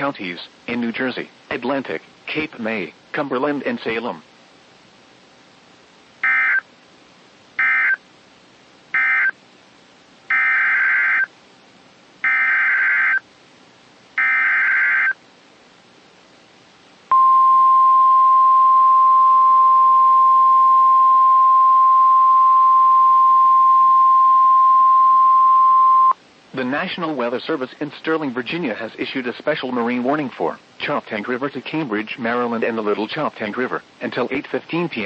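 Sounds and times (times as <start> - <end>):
steady warning alarm tone: 6.2 - 6.6, 7.6 - 8.0, 9.0 - 9.3, 10.3 - 11.3, 12.2 - 13.2, 14.2 - 15.2
buzzing data tone bursts: 6.2 - 6.7, 7.6 - 8.0, 8.9 - 9.4, 10.3 - 11.3, 12.2 - 13.2, 14.2 - 15.2.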